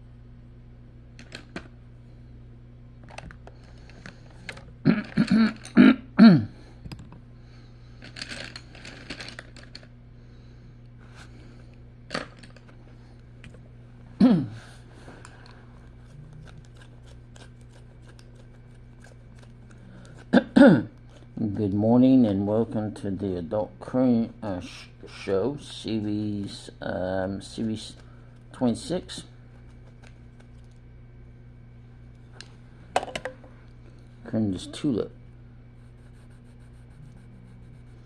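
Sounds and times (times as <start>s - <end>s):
low hum: 0.0s - 38.0s
person burping: 4.8s - 6.6s, 14.2s - 14.6s, 20.3s - 20.9s.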